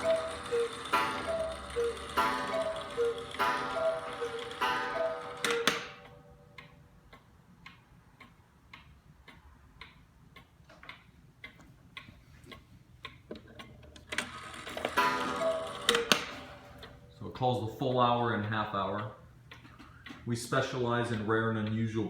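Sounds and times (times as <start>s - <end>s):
cuckoo clock calling: 0.0s - 6.8s, 14.1s - 17.1s
clock ticking: 0.0s - 22.0s.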